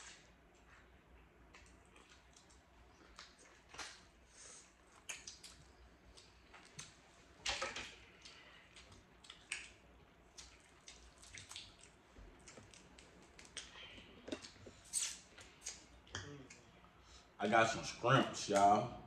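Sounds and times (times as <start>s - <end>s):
person chewing and sucking: 8.1s - 16.7s.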